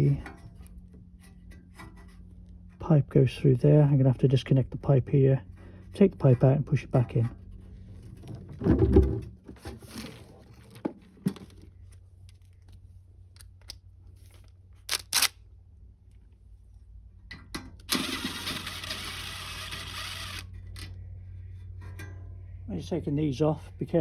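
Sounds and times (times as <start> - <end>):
cordless impact driver running: 17.8 - 20.9.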